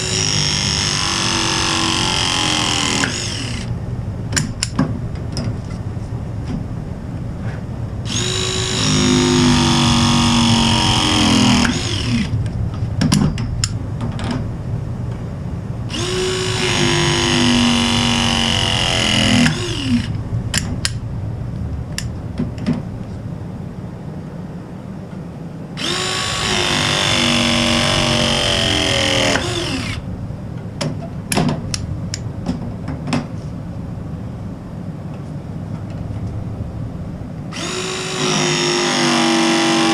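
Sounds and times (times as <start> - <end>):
crimping tool motor whine: 0.0 - 3.7, 8.1 - 12.4, 15.9 - 20.2, 25.8 - 30.0, 37.5 - 39.9.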